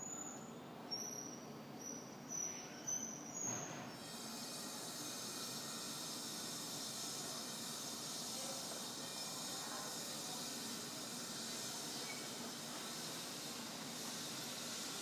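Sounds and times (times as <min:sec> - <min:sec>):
steam hissing: 0:04.0 - 0:15.0.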